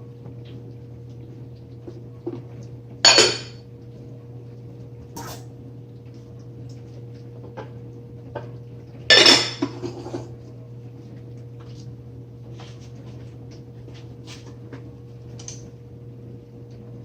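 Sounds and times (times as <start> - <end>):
steady low hum: 0.0 - 17.0
dishes and utensils clattering: 3.1 - 3.6, 5.2 - 5.5, 9.1 - 10.3.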